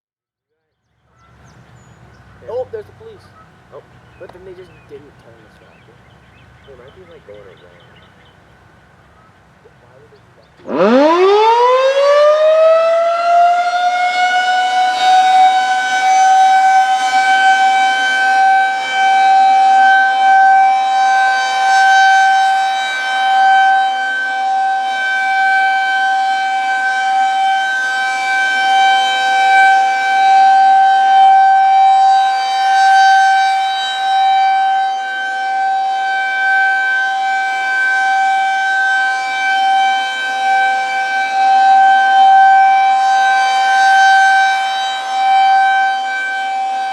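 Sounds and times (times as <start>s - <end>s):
outdoor warning siren steady tone: 9.1s - 46.9s.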